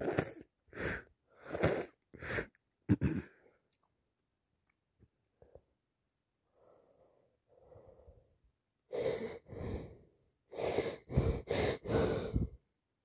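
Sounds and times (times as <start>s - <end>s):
person breathing: 0.0s - 2.6s, 6.4s - 12.6s
loud gasping inhalations: 8.9s - 12.6s.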